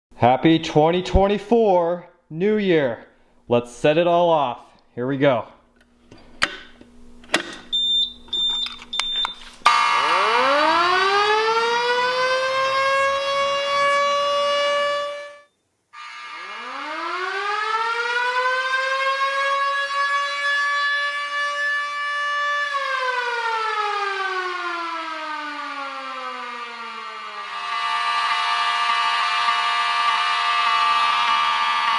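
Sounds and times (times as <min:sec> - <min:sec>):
air raid siren wailing: 0:09.7 - 0:31.9.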